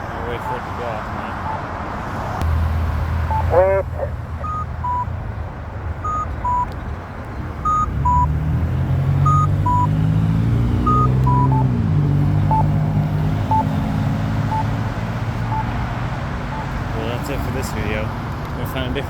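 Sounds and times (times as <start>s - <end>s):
pedestrian signal beeping: 0.0s - 1.7s, 3.2s - 5.1s, 6.0s - 6.8s, 7.6s - 8.4s, 9.2s - 10.0s, 10.8s - 11.8s, 12.4s - 12.8s, 13.4s - 16.8s
vehicle engine passing: 0.0s - 6.6s, 7.5s - 19.0s.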